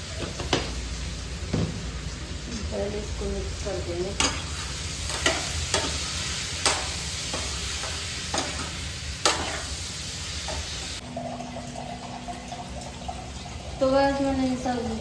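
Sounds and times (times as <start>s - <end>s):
food sizzling in hot oil: 0.0s - 11.1s.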